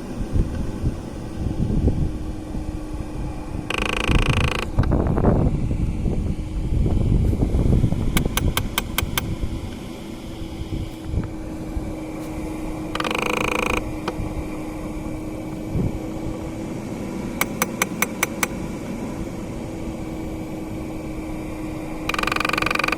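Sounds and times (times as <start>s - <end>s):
fan hum: 0.0s - 22.9s
actuator clicking: 3.7s - 5.0s, 8.1s - 9.8s, 12.9s - 14.2s, 17.4s - 18.6s, 22.0s - 22.9s.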